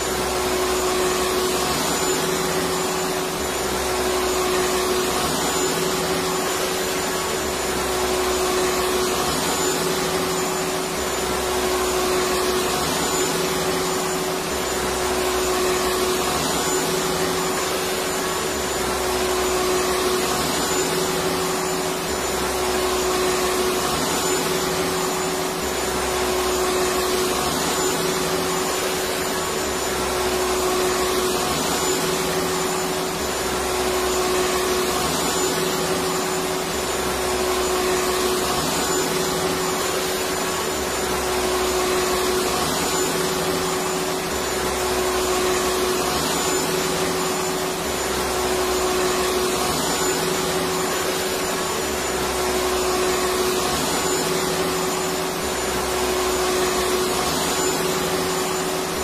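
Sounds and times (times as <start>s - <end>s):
vacuum cleaner motor whirring: 0.0s - 59.0s.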